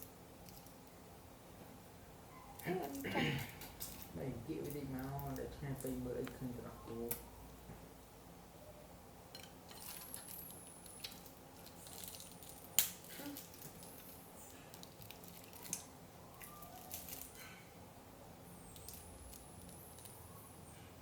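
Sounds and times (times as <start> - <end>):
faint high squeaks: 2.3 - 2.9, 16.2 - 17.4.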